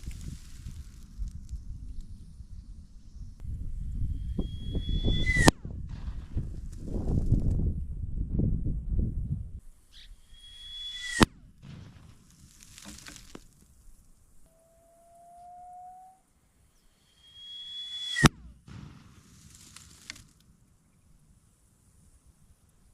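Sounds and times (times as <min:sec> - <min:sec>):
brief high whistle: 0:04.1 - 0:05.6, 0:09.9 - 0:11.3, 0:14.5 - 0:18.4
mortar firing bang: 0:11.0 - 0:13.6, 0:18.1 - 0:19.6.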